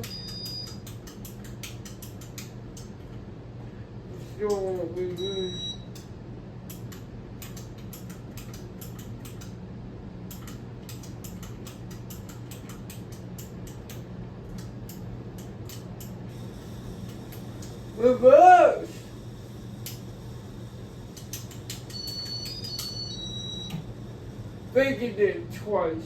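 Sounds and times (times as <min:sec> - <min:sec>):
sharp switch clicks: 0:00.0 - 0:03.0, 0:06.7 - 0:09.6, 0:10.3 - 0:16.2
low electrical hum: 0:00.0 - 0:26.0.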